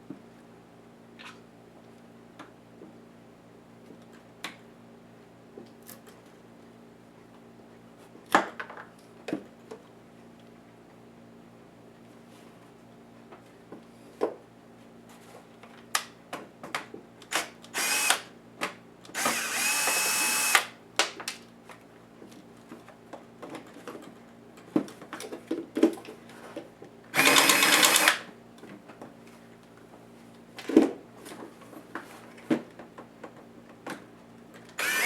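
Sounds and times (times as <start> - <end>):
electric screwdriver running: 17.8 - 18.2, 19.2 - 20.7, 27.2 - 28.3, 34.8 - 35.0
small screws clicking: 27.2 - 28.2.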